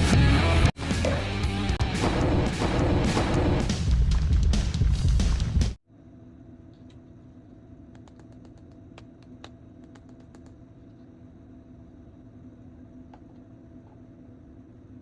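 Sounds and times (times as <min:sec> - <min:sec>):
steady low hum: 0:05.8 - 0:15.0.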